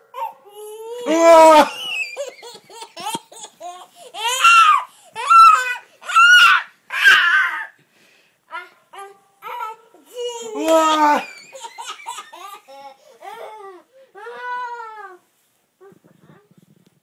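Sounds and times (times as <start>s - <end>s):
small child laughing: 1.6s - 3.9s, 10.4s - 13.6s.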